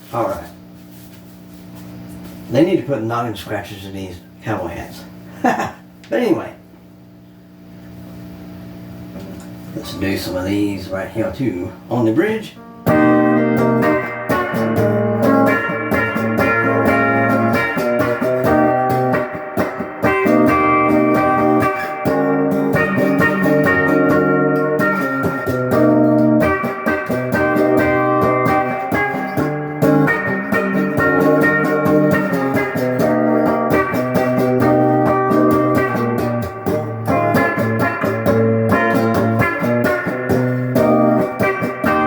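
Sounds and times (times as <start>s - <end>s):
electric guitar chords: 7.7s - 11.4s, 12.5s - 42.0s.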